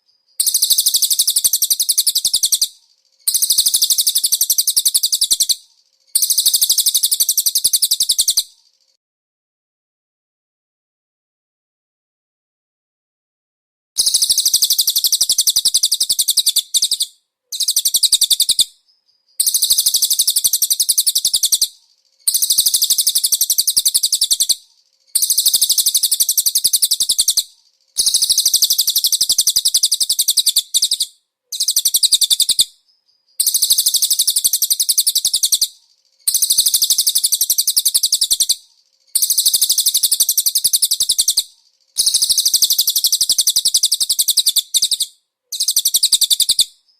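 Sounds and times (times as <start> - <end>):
bird trilling: 14.0 - 18.7, 22.3 - 24.6, 25.2 - 32.7, 33.4 - 35.7, 39.2 - 41.4, 42.0 - 46.7.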